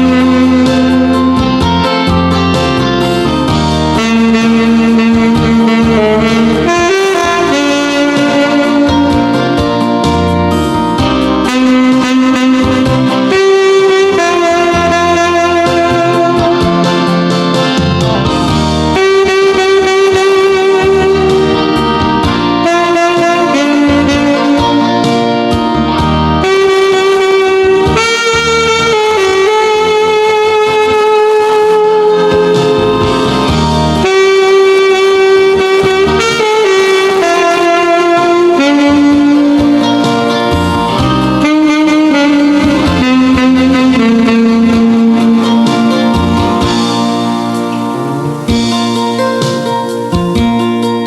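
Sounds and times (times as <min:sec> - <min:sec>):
alto saxophone melody: 0:00.0 - 0:51.0
backing track: 0:00.0 - 0:51.0.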